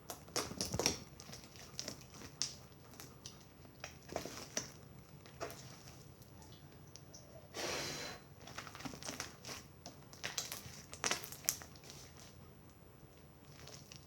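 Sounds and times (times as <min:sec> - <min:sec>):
slime wet clicks and crackles: 0:08.6 - 0:12.3.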